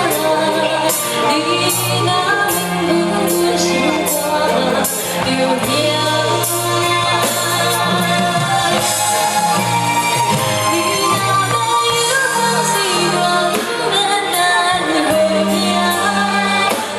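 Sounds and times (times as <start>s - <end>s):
live band playing pop ballad: 0.0s - 16.9s
person singing: 0.0s - 16.9s.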